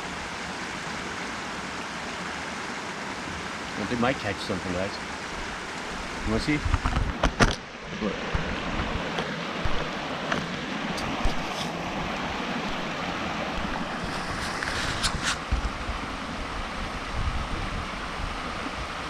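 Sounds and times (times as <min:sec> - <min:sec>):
river water rushing: 0:00.0 - 0:19.0
wind buffeting microphone: 0:06.0 - 0:10.1, 0:13.5 - 0:19.0.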